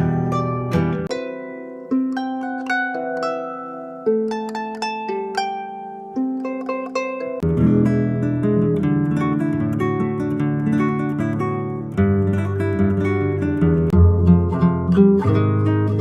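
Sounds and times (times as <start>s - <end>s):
fingerstyle acoustic guitar: 0.0s - 1.2s, 6.4s - 16.0s.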